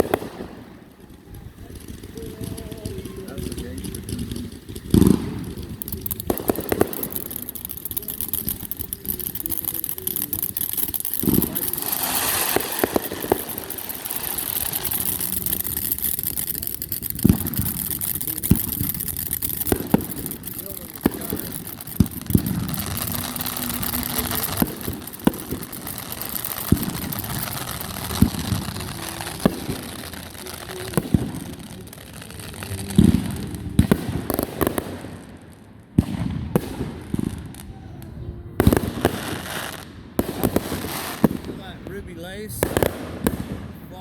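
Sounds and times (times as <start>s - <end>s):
fireworks bangs and pops: 0.0s - 44.0s
steady hiss: 1.9s - 35.8s.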